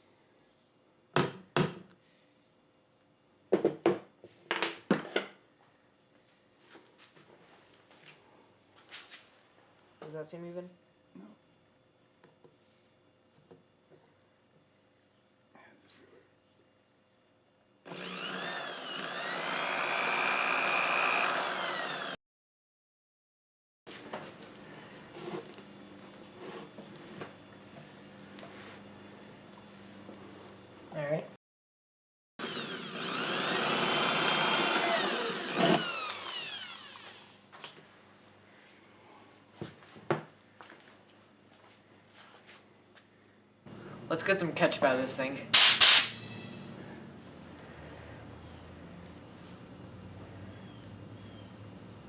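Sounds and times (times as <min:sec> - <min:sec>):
power tool motor whining on metal: 0:17.9 - 0:22.2, 0:32.4 - 0:37.3, 0:45.6 - 0:46.3
hammer blows on tin can: 0:45.6 - 0:46.4.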